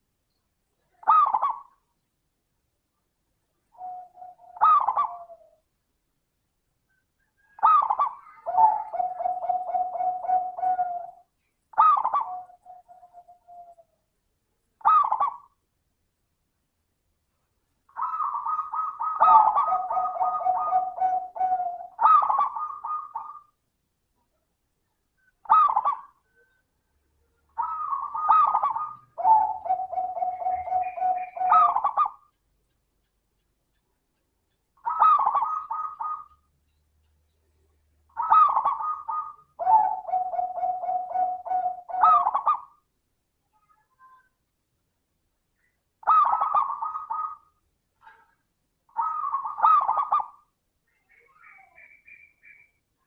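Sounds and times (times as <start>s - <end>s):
dove cooing: 0.9s - 1.8s, 3.7s - 5.6s, 7.2s - 14.0s, 14.8s - 15.6s, 17.9s - 23.6s, 25.4s - 26.6s, 27.5s - 32.4s, 34.8s - 36.5s, 38.1s - 42.8s, 46.0s - 50.5s.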